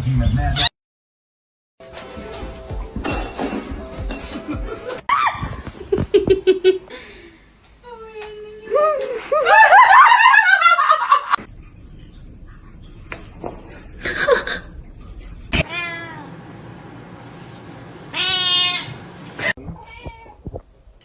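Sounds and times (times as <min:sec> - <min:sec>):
cat meowing and yowling: 0:15.6 - 0:16.3.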